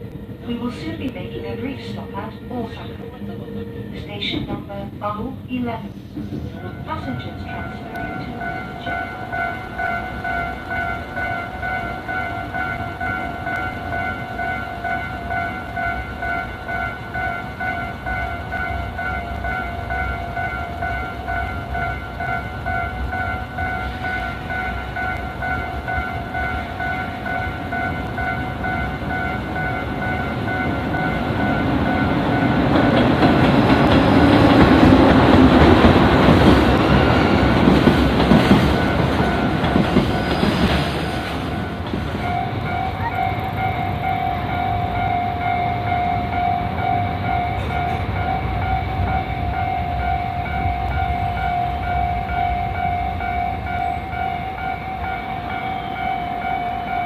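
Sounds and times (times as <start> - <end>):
train passing: 0.0 - 57.0
level crossing bell ringing: 6.5 - 32.7, 41.5 - 57.0.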